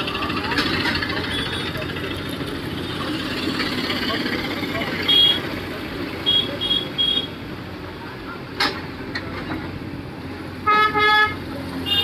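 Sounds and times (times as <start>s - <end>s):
vehicle rumble: 0.0s - 12.0s
vehicle horn blasts: 5.1s - 5.4s, 10.6s - 12.0s.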